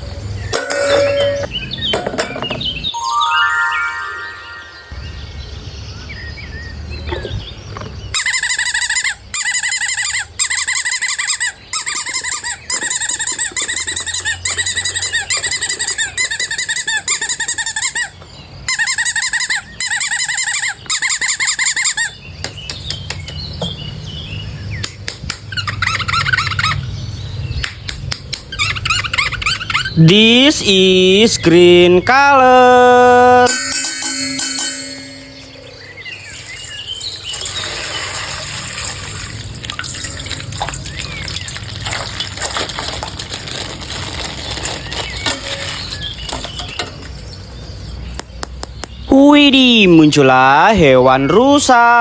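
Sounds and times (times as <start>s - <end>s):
bird trilling chirps: 0.4s - 5.6s, 25.5s - 38.1s.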